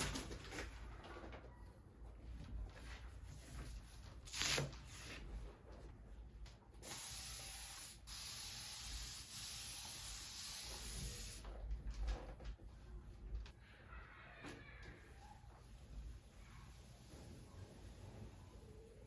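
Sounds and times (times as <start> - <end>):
spray hissing: 6.8 - 11.4.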